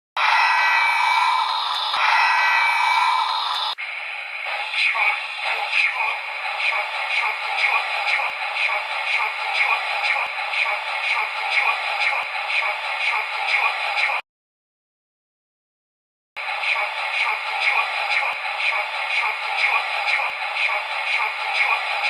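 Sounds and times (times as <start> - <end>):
tinny synth alarm jingle: 0.2 - 3.4.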